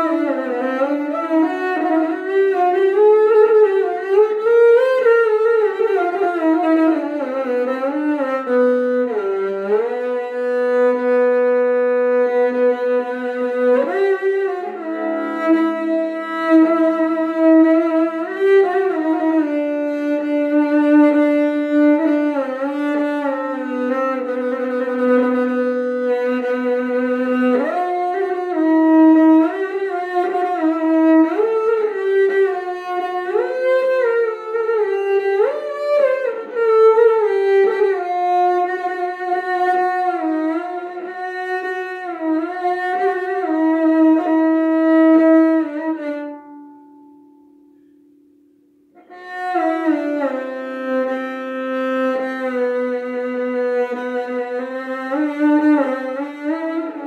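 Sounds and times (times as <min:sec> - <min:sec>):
violin playing slow notes: 0:48.9 - 0:57.0.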